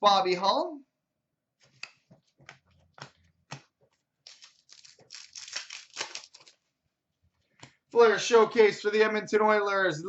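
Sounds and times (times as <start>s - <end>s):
cards clicking and snapping: 1.7s - 6.6s
wrapper crinkling and rustling: 4.3s - 6.7s.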